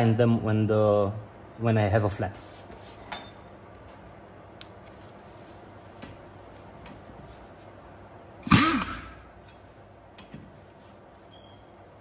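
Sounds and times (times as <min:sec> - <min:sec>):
pneumatic impact wrench blip: 0:08.4 - 0:09.2.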